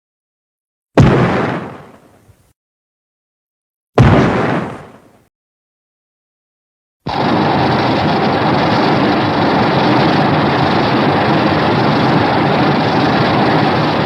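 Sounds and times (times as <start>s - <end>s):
loud steady rushing noise: 7.1s - 14.0s.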